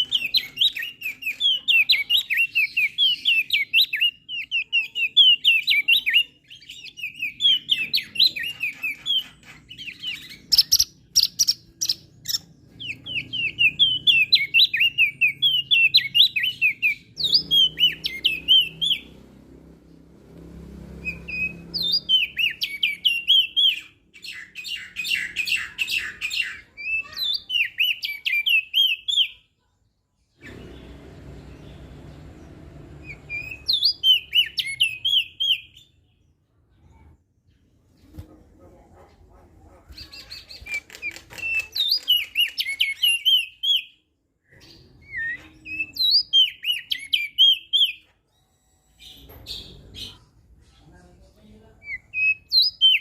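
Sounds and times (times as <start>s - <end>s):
bird twittering chirps: 0.0s - 19.4s, 21.0s - 29.4s, 30.4s - 36.2s.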